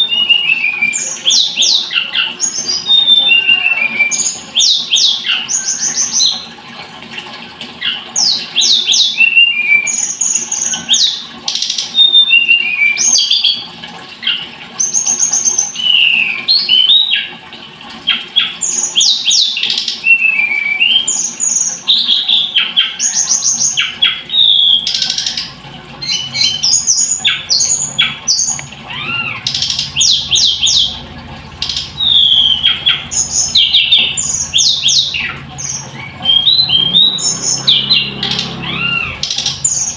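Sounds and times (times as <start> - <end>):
songbird singing: 0.0 - 6.5, 18.1 - 39.9.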